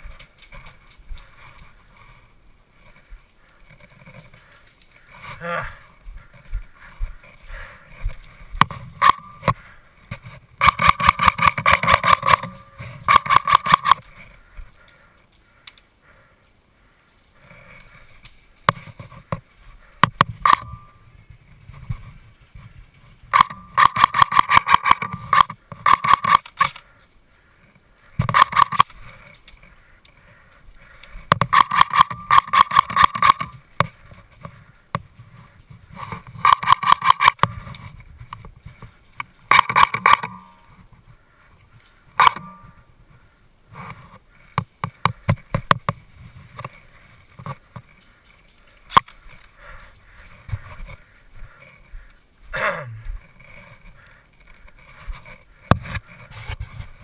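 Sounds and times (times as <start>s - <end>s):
airsoft rifle firing: 10.6s - 14.0s.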